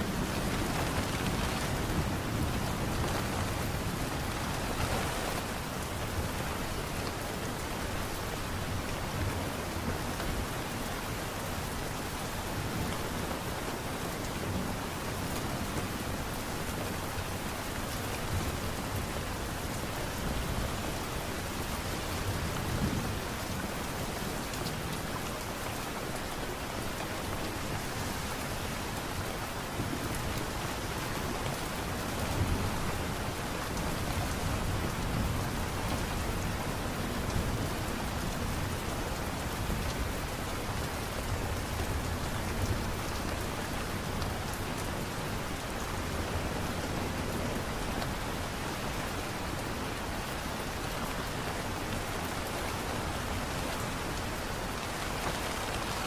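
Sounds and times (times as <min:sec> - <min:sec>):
light rain falling: 0:00.0 - 0:56.0.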